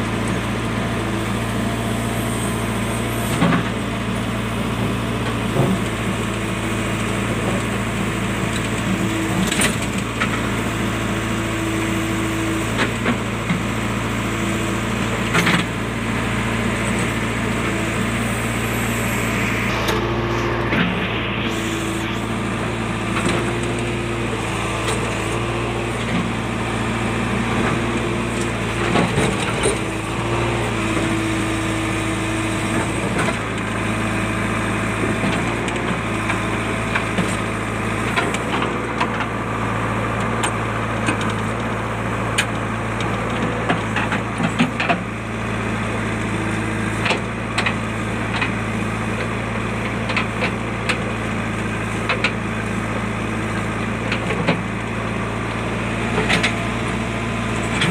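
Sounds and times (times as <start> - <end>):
diesel engine running steadily: 0.0 - 57.9.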